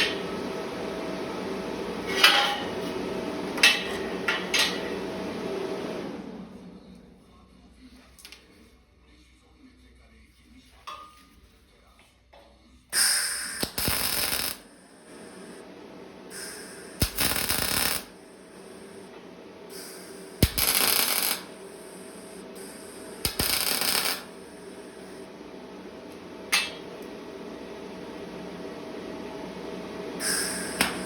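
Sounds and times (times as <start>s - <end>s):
welding machine hum: 0.0s - 6.4s, 13.0s - 31.0s
arc welding crackle: 13.0s - 15.6s, 16.3s - 19.1s, 19.7s - 25.2s, 30.2s - 31.0s.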